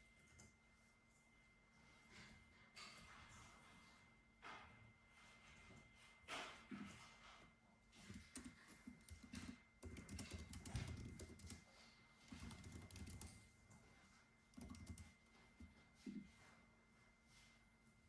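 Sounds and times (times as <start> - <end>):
quiet keyboard typing: 8.0 - 16.3.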